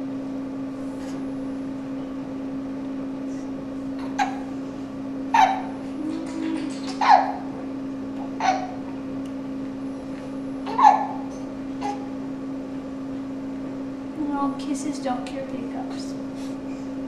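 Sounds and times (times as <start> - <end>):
steady low hum: 0.0 - 17.0
baby hiccupping with squeak: 5.4 - 7.4, 8.4 - 8.8, 10.7 - 12.1.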